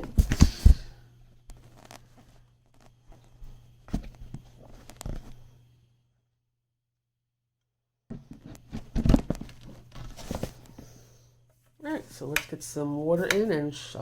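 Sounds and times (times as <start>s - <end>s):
low steady hum: 8.1s - 14.0s.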